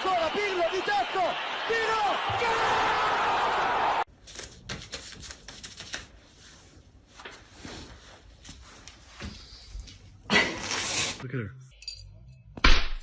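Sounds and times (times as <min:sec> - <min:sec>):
stadium crowd noise: 0:00.0 - 0:04.1.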